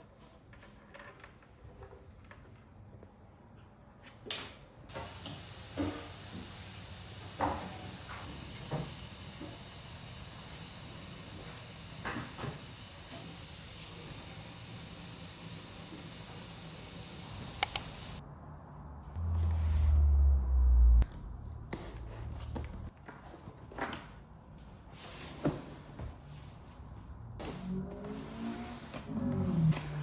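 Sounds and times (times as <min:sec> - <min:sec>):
steady hiss: 0:04.9 - 0:18.2
sharp clicks: 0:17.4 - 0:18.2.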